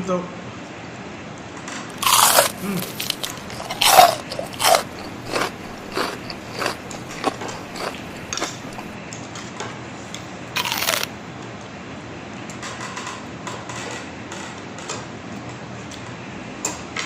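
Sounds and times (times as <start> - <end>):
crunchy chewing: 2.0 - 9.0, 10.6 - 11.1.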